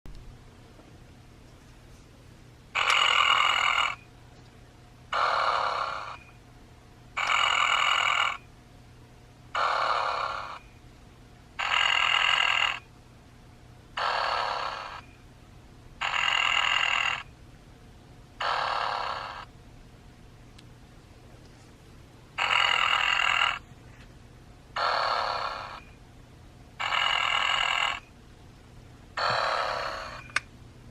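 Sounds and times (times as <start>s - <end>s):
toy snoring through speaker: 2.8s - 4.0s, 5.1s - 6.3s, 7.2s - 8.4s, 9.6s - 10.7s, 11.6s - 12.9s, 14.0s - 15.1s, 16.0s - 17.3s, 18.4s - 19.5s, 22.4s - 23.6s, 24.8s - 25.9s, 26.8s - 28.1s, 29.2s - 30.3s.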